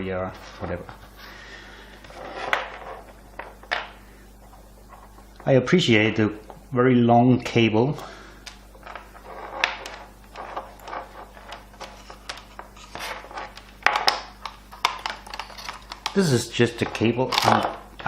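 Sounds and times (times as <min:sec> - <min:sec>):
microphone cable rustling and scraping: 0:00.2 - 0:01.2, 0:08.8 - 0:13.6.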